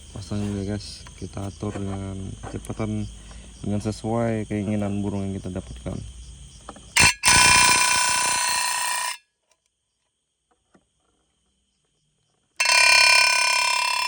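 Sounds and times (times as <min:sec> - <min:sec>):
recorded bird call through loudspeaker: 0:03.8 - 0:06.1.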